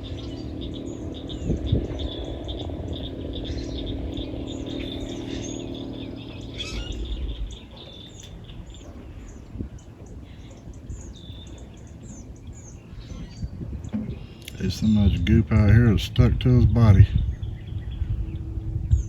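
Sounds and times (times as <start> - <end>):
insect trill: 0.0 - 8.4
low rumble: 0.0 - 11.4, 12.1 - 19.0
songbirds chirping: 0.0 - 19.0.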